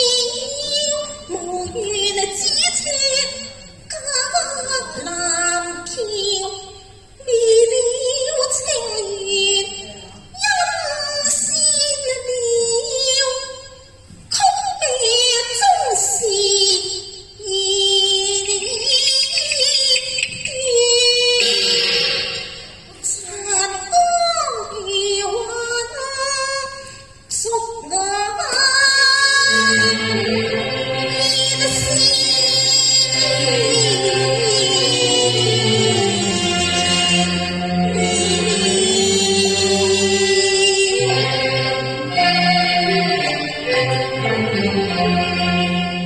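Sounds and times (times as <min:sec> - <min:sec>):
woman singing opera: 0:23.0 - 0:45.7
low musical accompaniment: 0:29.3 - 0:46.0.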